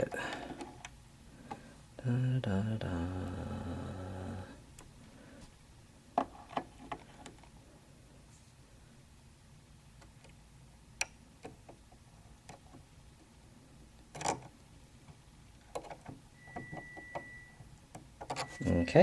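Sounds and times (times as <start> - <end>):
small clicks and taps of parts: 11.0 - 12.9, 14.1 - 16.2
faint high tone: 18.4 - 19.0.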